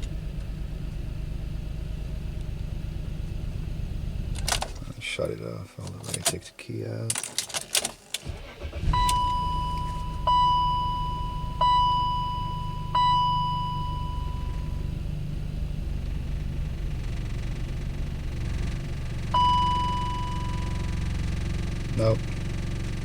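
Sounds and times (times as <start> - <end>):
car engine starting and idling: 0.0 - 6.4, 7.1 - 23.0
ringing electronic chime: 9.1 - 14.9, 19.4 - 20.9.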